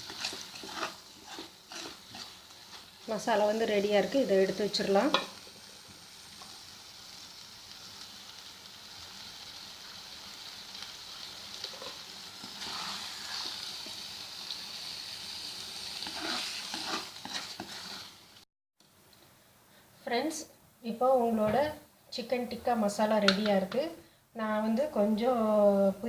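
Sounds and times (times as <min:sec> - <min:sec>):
food sizzling in a pan: 0:00.0 - 0:18.5.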